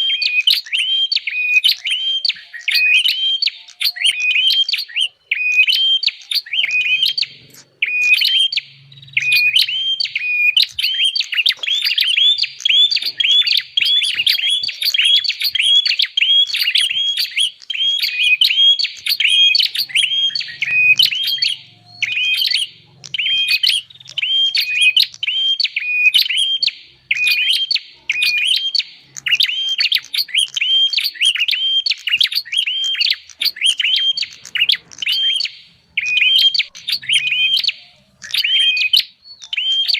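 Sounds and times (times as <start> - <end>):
bird high chirps: 0.0 - 39.9.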